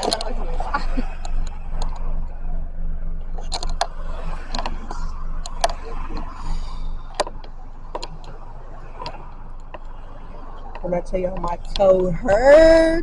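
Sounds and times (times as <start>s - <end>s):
car engine rumble: 0.0s - 13.0s
road noise inside car: 0.0s - 13.0s
sharp clicks and knocks: 3.3s - 6.3s, 7.1s - 8.4s, 9.0s - 10.0s.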